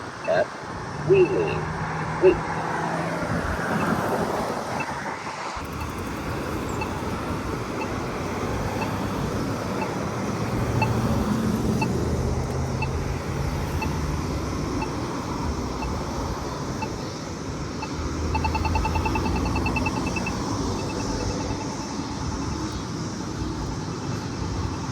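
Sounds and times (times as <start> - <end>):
pedestrian signal button ticking: 0.0 - 0.5, 17.7 - 22.0
road traffic: 0.0 - 24.9.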